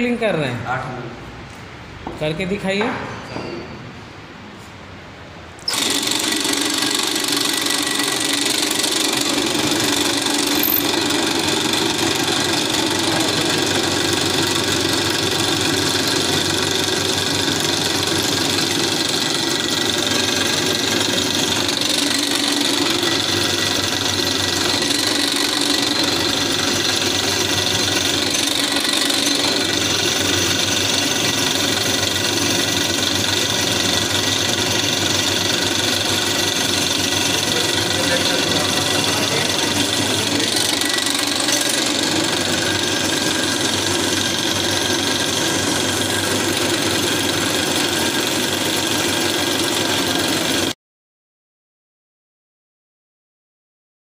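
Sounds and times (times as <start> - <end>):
drill press drilling metal: 5.6 - 50.7.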